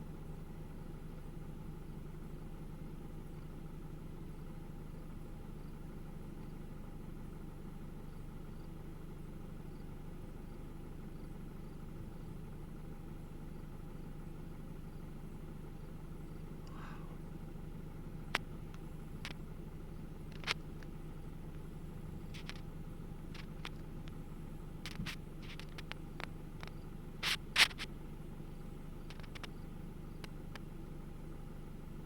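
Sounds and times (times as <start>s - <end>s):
low mechanical hum: 0.0s - 32.0s
sharp clicks: 29.0s - 29.6s.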